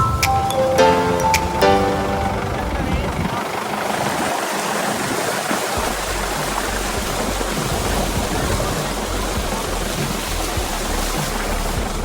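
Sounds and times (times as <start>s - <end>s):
low engine rumble: 0.9s - 4.0s, 5.8s - 12.0s.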